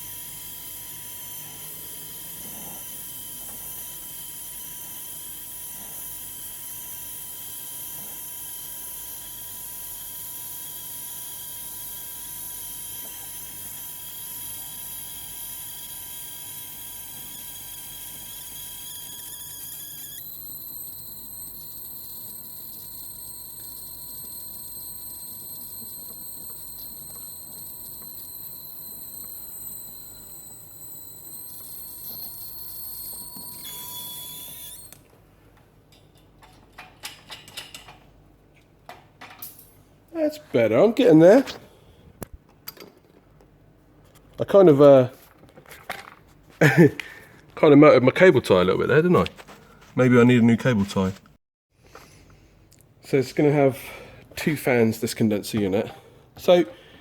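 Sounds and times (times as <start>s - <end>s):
torch flame hissing and whistling: 18.8s - 34.9s.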